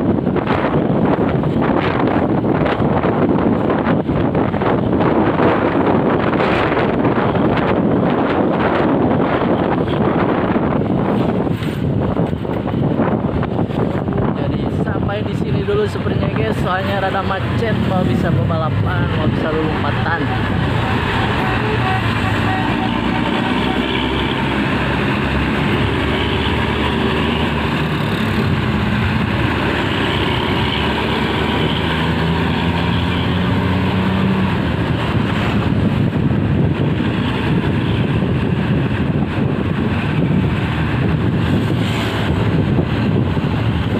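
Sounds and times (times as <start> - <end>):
road and traffic noise: 0.0 - 43.9
heavy vehicle engine running: 16.7 - 43.9.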